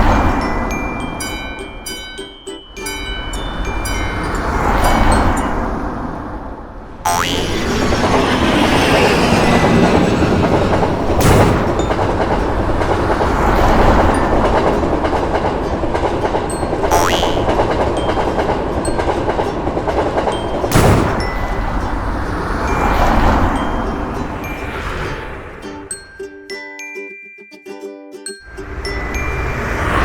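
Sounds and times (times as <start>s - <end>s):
sharp loud bangs: 7.3s - 14.2s, 20.6s - 22.4s
train wheels clattering on rails: 7.5s - 24.7s.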